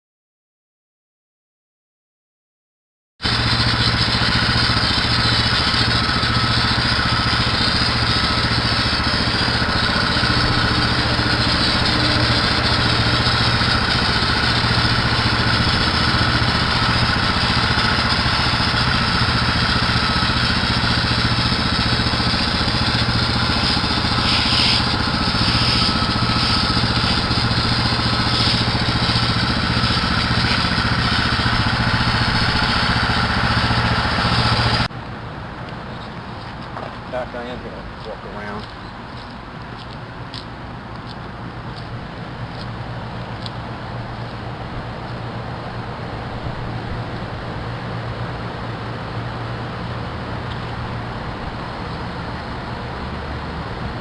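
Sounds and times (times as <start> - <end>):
small gasoline engine running: 3.2 - 34.9, 41.7 - 54.0
steady hiss: 4.6 - 34.8.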